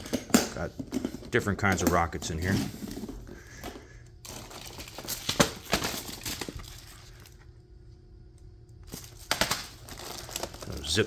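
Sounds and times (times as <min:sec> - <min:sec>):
packaging crinkling and rustling: 0:04.2 - 0:07.5, 0:08.8 - 0:11.0.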